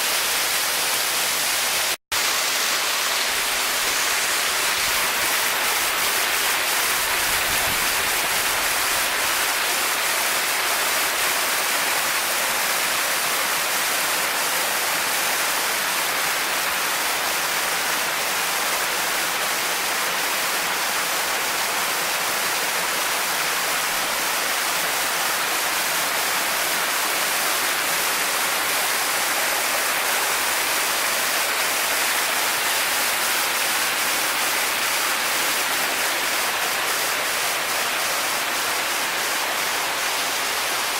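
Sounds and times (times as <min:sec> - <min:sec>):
water pouring over waterfall: 0:00.0 - 0:40.9.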